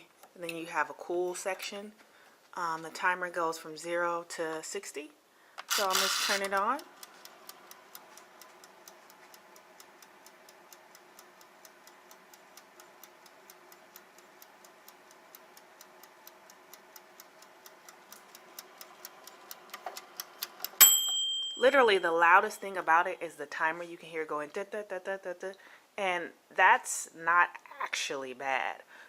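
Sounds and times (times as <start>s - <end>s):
dial timer ticking rapidly: 5.7s - 22.6s
timer click with brief ring: 20.6s - 22.1s.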